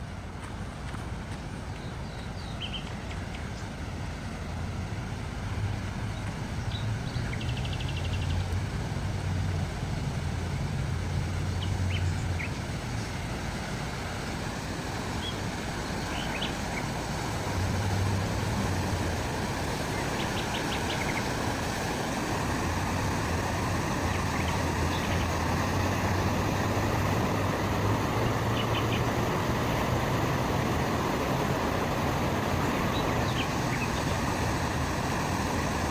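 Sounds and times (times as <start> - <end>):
road traffic rumble: 0.0 - 35.9.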